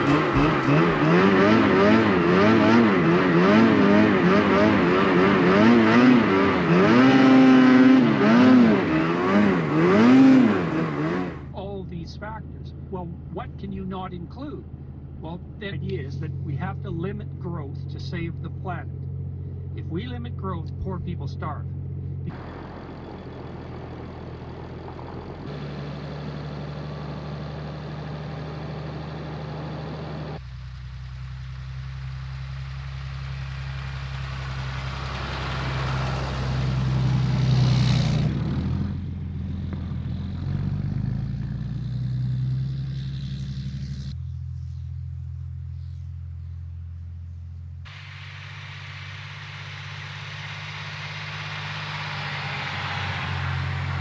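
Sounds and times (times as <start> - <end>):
pickup truck engine drone: 0.0 - 54.0
road noise: 0.0 - 54.0.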